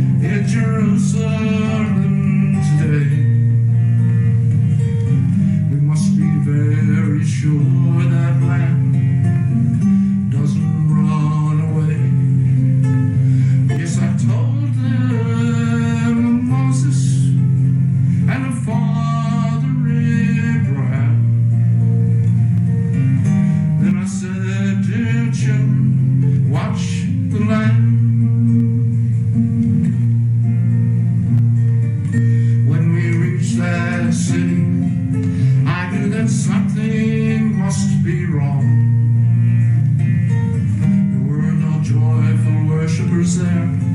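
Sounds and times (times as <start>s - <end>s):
person singing long notes: 0.0s - 4.4s, 13.6s - 17.6s, 18.2s - 21.6s, 32.1s - 38.9s
person singing: 0.0s - 21.6s, 23.6s - 29.8s, 32.1s - 39.8s, 40.6s - 43.9s
acoustic guitar: 0.0s - 43.9s.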